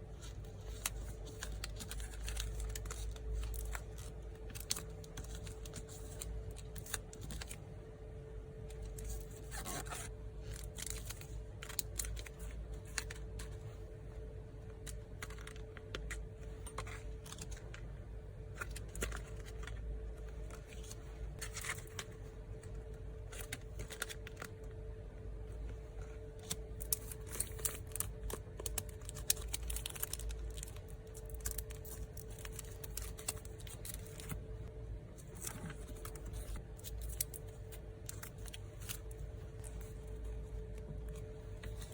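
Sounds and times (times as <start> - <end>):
faint steady hum: 0.0 - 41.9
paper packaging rustling: 0.2 - 7.6, 26.3 - 34.4, 35.2 - 41.9.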